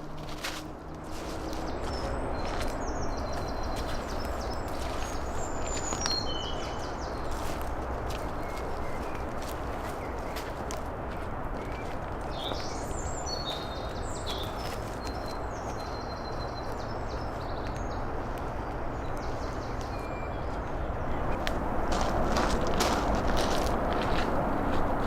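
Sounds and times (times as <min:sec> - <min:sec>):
small birds chirping: 0:01.1 - 0:10.6, 0:11.6 - 0:21.4
steady rushing noise: 0:20.6 - 0:25.0.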